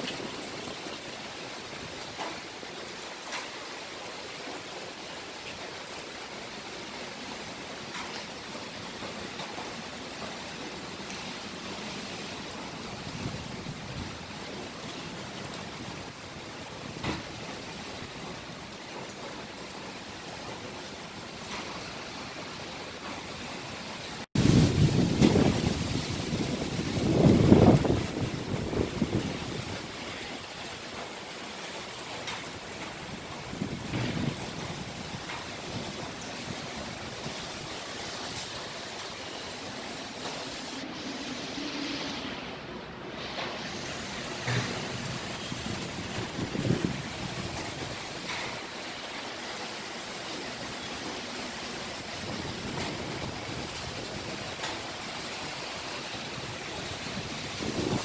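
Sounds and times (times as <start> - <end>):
wind gusts buffeting microphone: 7.5 - 49.9, 50.5 - 58.0
wind rushing: 24.4 - 30.0, 56.9 - 58.0.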